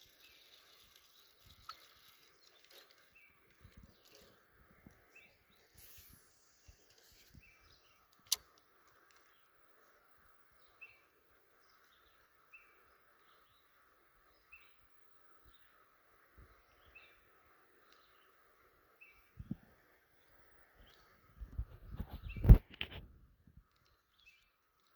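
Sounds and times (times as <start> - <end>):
sharp click: 8.2 - 8.6.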